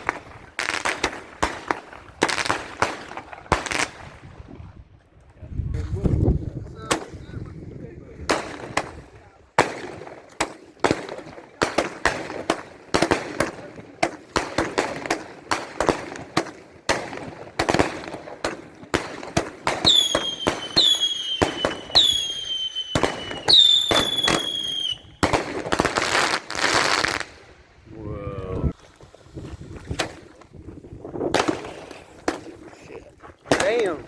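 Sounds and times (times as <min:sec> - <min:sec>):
fireworks bangs and crackles: 0:00.0 - 0:04.8, 0:05.6 - 0:27.8, 0:29.8 - 0:34.0
whistling fireworks: 0:16.8 - 0:27.6.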